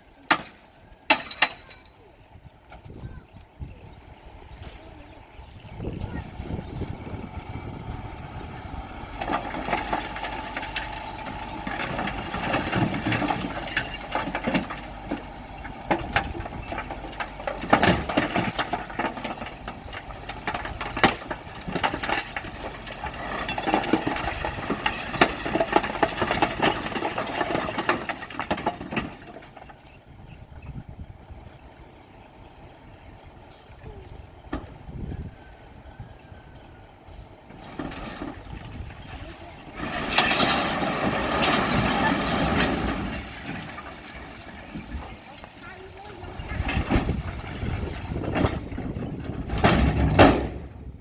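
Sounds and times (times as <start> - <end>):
diesel engine running: 2.2 - 51.0
rocks clattering and grinding: 9.0 - 30.0, 37.5 - 51.0.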